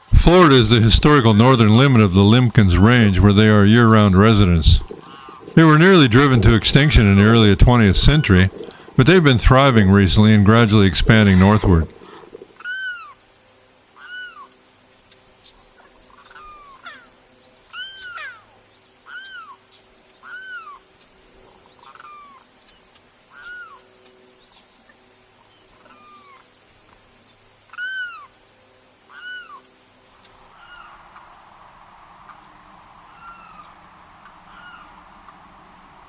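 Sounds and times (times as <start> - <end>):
bird giving loud wailing cry: 14.0 - 14.5, 23.3 - 23.8, 27.7 - 28.3, 29.1 - 29.6.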